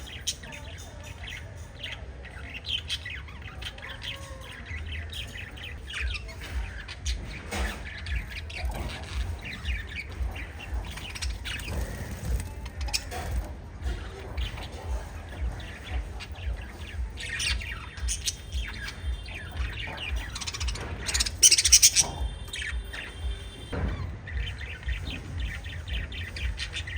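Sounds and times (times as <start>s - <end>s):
lovebirds chirping and squawking: 0.0s - 26.9s.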